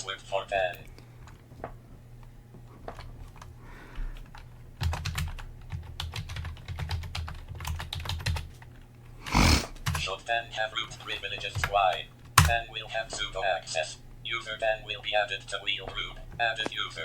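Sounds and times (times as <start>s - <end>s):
typing on computer keyboard: 4.2s - 8.7s, 12.4s - 12.6s.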